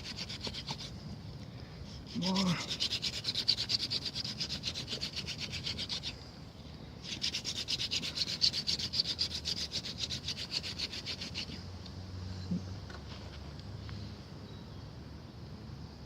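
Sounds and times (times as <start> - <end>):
wooden hand drill rasping: 0.0 - 1.0, 2.1 - 6.1, 7.0 - 11.6.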